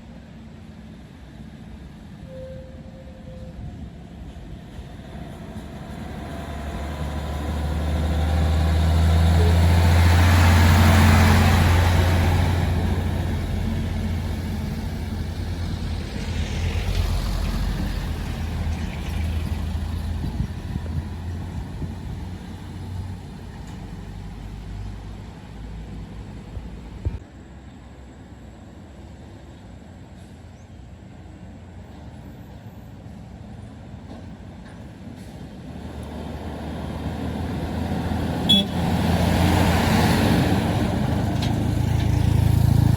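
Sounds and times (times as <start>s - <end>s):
truck diesel engine labouring: 3.6s - 27.1s, 35.2s - 42.9s.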